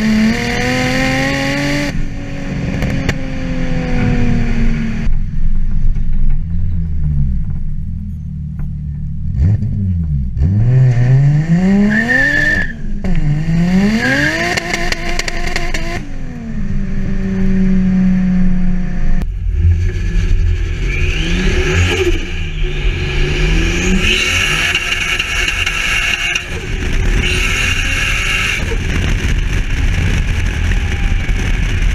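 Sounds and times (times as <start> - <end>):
car engine revving: 0.0 - 5.8, 6.4 - 31.9
high turbo whistle: 20.4 - 28.8.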